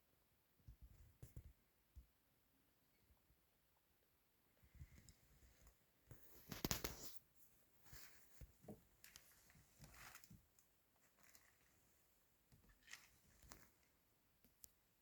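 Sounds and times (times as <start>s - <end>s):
faint small clicks: 4.7s - 7.2s
soft rustles: 4.7s - 14.6s.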